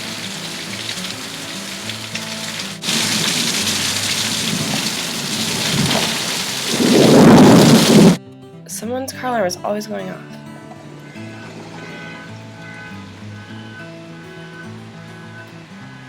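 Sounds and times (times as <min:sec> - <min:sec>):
heavy rain pouring: 0:00.0 - 0:08.2
thunder rumbling: 0:00.0 - 0:08.2.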